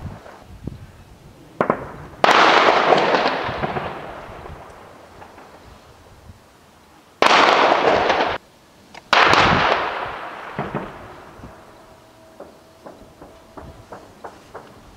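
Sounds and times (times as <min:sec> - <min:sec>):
heavy shelling explosions: 0:01.6 - 0:05.6, 0:09.1 - 0:11.7.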